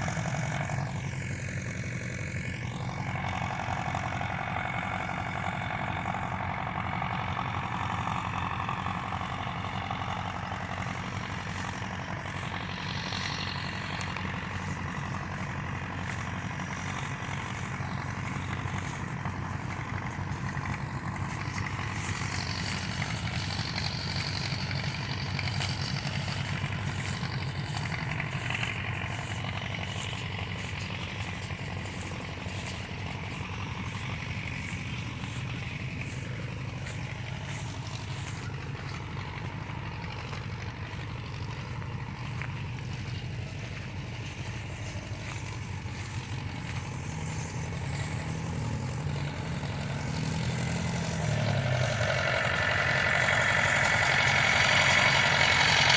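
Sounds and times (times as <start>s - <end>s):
faint regular ticking: 0.0s - 55.9s
tractor engine running: 0.0s - 55.9s.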